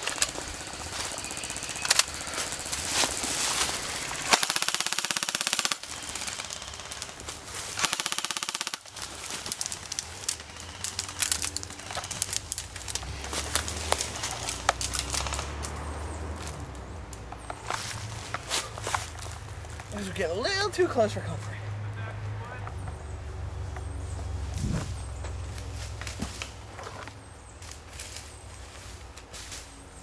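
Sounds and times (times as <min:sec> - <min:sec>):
airsoft rifle full-auto bursts: 0:04.2 - 0:07.2, 0:07.8 - 0:09.0.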